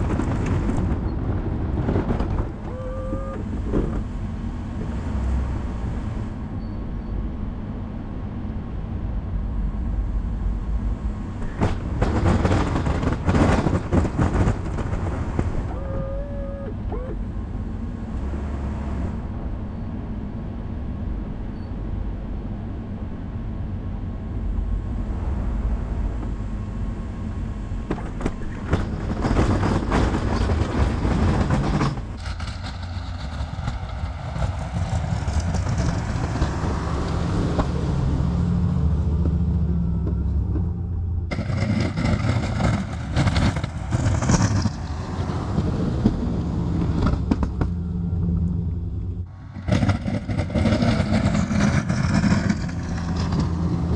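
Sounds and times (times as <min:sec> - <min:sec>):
snow plow scraping: 0:11.2 - 0:16.0, 0:24.9 - 0:39.9, 0:41.3 - 0:53.9.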